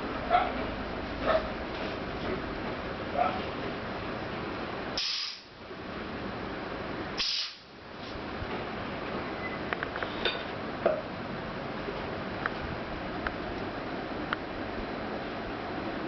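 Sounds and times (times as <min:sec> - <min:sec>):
air cylinder hissing: 0:05.0 - 0:05.5, 0:07.2 - 0:07.7.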